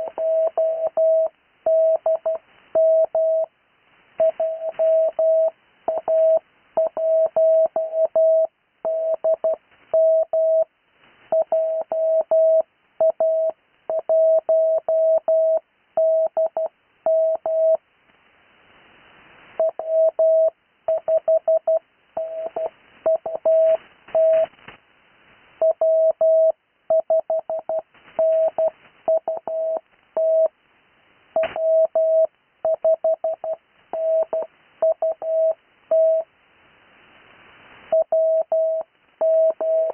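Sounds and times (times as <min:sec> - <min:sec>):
morse code tone: 0:04.2 - 0:10.7, 0:19.6 - 0:24.5, 0:25.6 - 0:30.5, 0:37.9 - 0:39.9.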